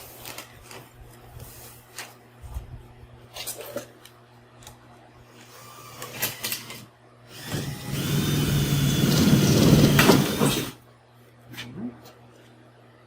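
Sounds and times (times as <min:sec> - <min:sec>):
power drill boring through plywood: 0:05.4 - 0:10.8.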